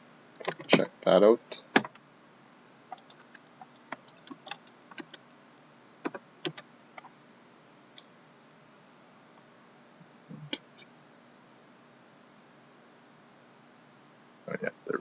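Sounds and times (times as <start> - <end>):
computer keyboard typing: 0.4 - 0.8, 1.8 - 2.0, 2.9 - 5.2, 6.0 - 7.1.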